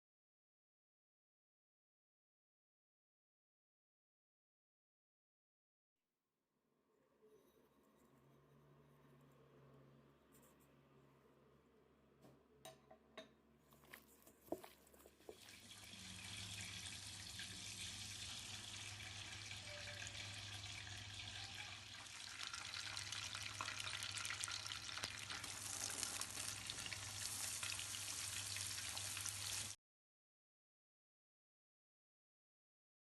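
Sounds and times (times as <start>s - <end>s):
food sizzling in hot oil: 15.3s - 29.8s.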